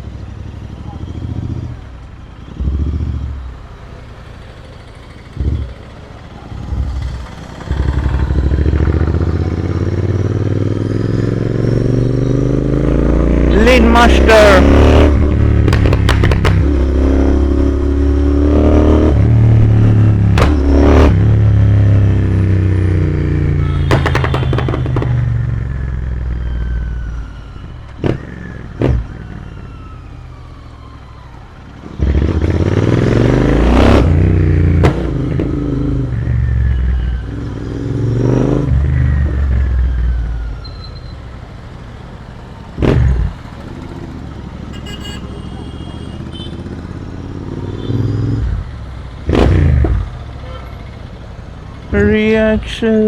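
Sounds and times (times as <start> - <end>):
motorcycle engine revving: 2.5 - 29.6, 31.8 - 42.0, 42.6 - 52.3
exhaust pops: 15.4 - 17.0, 20.2 - 21.2, 23.7 - 25.4, 34.7 - 35.5, 49.3 - 50.2.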